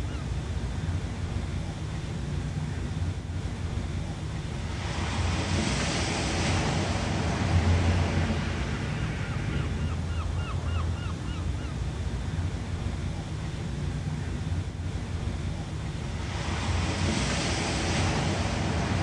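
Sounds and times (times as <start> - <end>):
low rumble of sea: 0.0 - 19.0
wave breaking with hiss: 4.7 - 9.5, 16.2 - 19.0.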